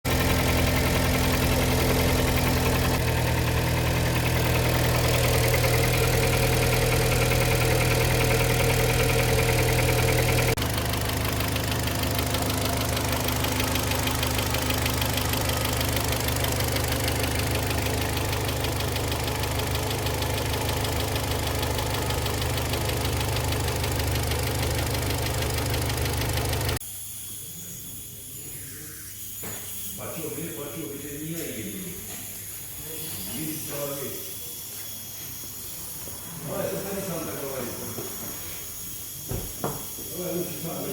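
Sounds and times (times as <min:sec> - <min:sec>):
car engine idling: 0:00.1 - 0:26.8.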